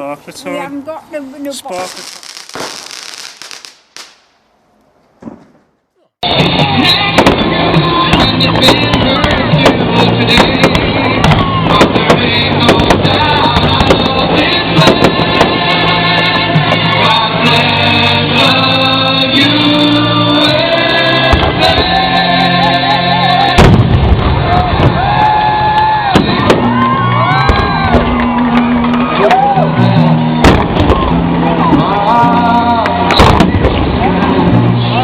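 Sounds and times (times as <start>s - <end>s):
firework bangs and crackles: 1.7s - 4.3s, 6.2s - 22.2s, 23.3s - 29.6s, 30.2s - 34.7s
music with singing: 6.2s - 23.9s, 25.9s - 35.0s.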